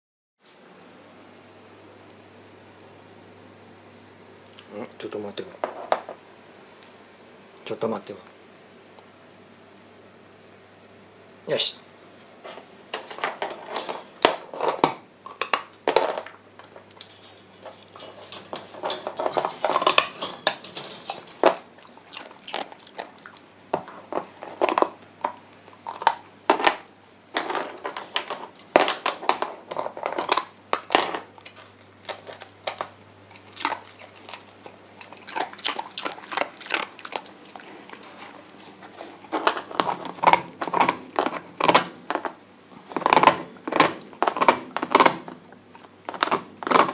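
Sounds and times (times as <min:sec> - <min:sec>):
dog crunching ice: 0:21.4 - 0:46.9.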